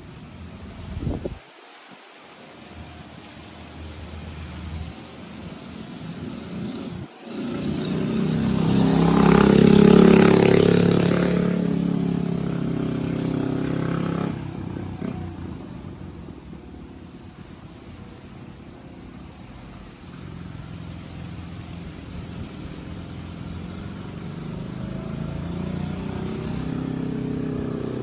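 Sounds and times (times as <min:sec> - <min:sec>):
mini bike engine running: 0:05.5 - 0:17.8.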